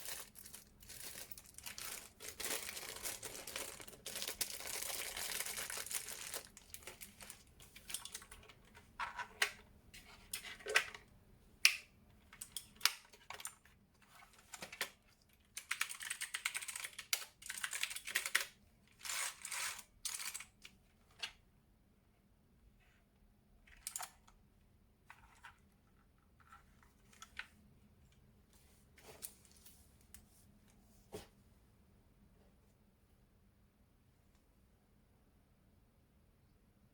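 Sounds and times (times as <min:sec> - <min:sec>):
packaging rustle: 0:00.0 - 0:07.4.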